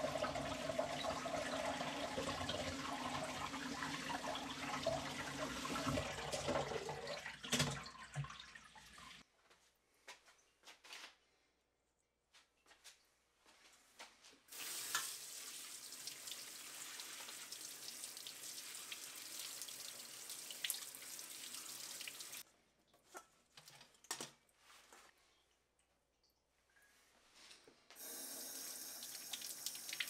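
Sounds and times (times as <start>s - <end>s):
tap water running into sink: 0.0s - 9.2s, 14.5s - 22.4s, 28.0s - 30.0s.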